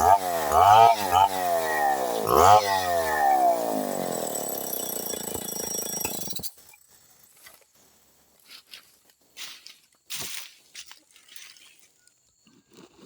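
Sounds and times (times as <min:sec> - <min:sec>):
chainsaw engine running: 0:00.0 - 0:07.6.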